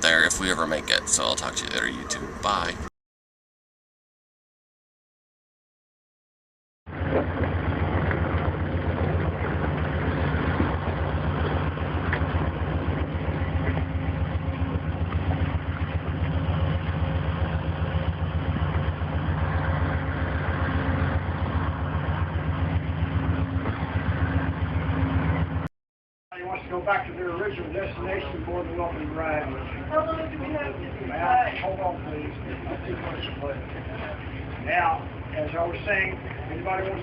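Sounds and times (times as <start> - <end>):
engine idling: 6.9 - 25.7, 26.6 - 37.0.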